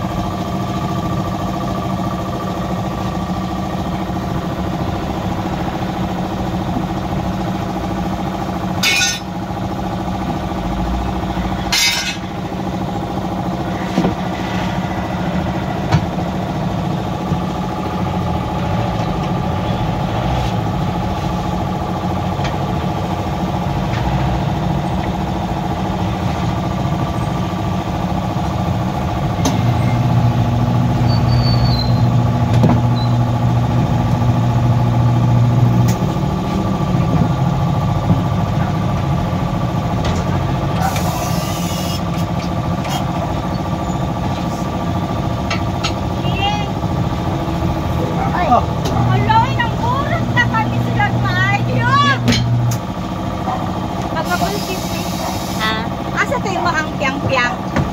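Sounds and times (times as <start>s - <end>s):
deep strong hum: 0.0s - 31.1s, 42.5s - 54.6s
engine running: 0.0s - 57.9s
hissing air blasts: 54.2s - 55.6s.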